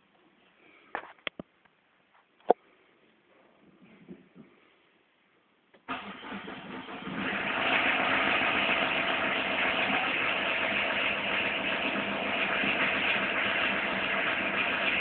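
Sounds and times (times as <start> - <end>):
diesel engine idling: 5.9 - 15.0
strange noise from drive belt: 5.9 - 15.0.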